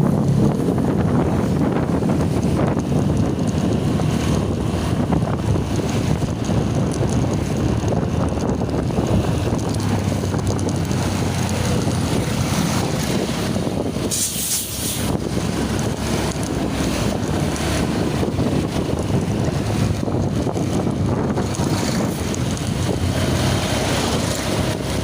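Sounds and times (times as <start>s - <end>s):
road traffic rumbling: 0.0s - 25.0s
wind buffeting microphone: 0.0s - 25.0s
brief hiss: 14.1s - 15.0s.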